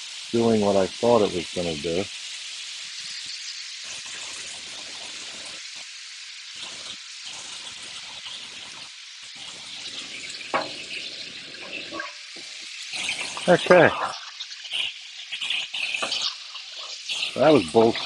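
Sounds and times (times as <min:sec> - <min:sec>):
liquid sizzling on hot griddle: 0:00.0 - 0:18.0.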